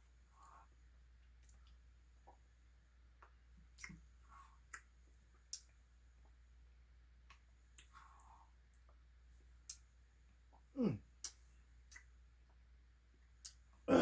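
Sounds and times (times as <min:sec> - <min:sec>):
mouth clicks and lip smacks: 0:01.2 - 0:02.4, 0:03.2 - 0:05.8, 0:09.6 - 0:09.9, 0:10.5 - 0:12.6, 0:13.4 - 0:13.7.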